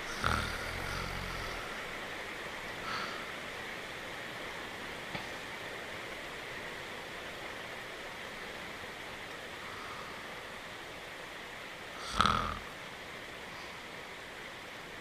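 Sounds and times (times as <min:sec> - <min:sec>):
low snore: 0:00.0 - 0:01.8, 0:12.0 - 0:12.7
rain hiss: 0:00.0 - 0:15.0.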